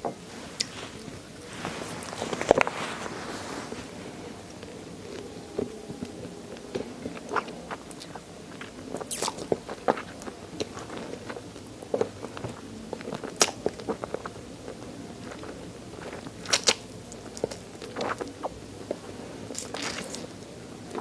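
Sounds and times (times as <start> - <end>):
wet mouth sounds: 3.7 - 21.0
chewing and crunching bones: 3.8 - 21.0.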